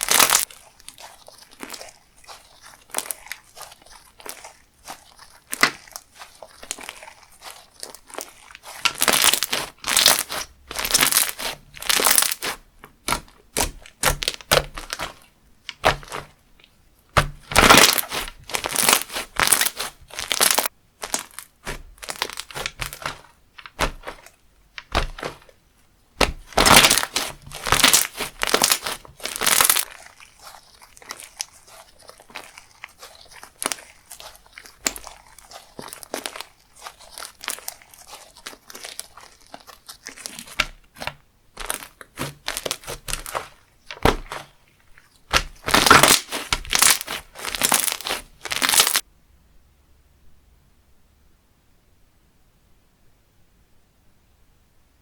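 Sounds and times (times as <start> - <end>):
slime crackling and popping: 0.0 - 25.6, 26.2 - 49.0.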